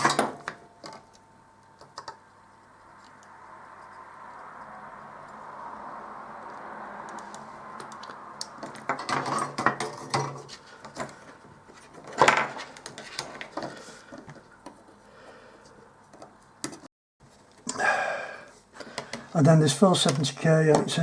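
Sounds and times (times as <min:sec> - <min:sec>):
small tools clicking and clattering: 0:07.2 - 0:14.8.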